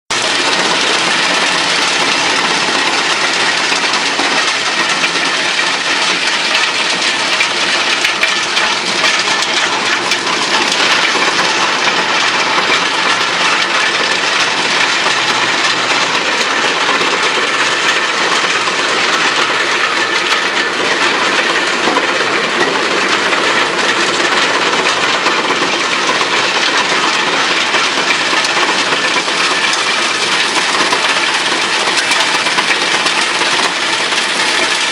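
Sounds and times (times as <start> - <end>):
wood chipper running: 0.1 - 34.9.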